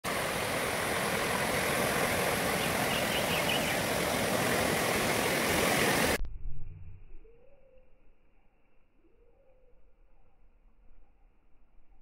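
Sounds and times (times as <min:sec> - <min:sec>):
steady rushing noise: 0:00.0 - 0:06.2.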